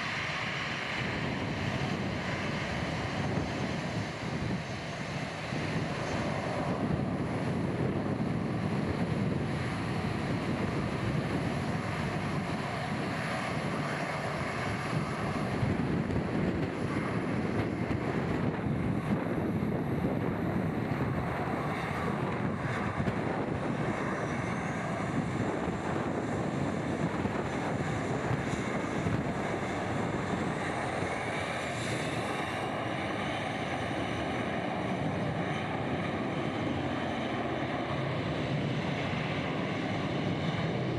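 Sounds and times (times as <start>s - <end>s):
jet airliner engines: 0.0s - 40.9s
strong wind buffeting microphone: 0.0s - 40.9s.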